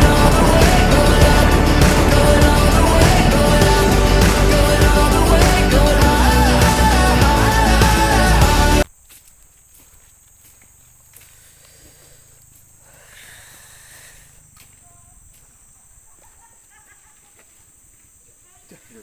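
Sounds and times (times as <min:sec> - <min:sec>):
low rumble: 0:00.0 - 0:08.8.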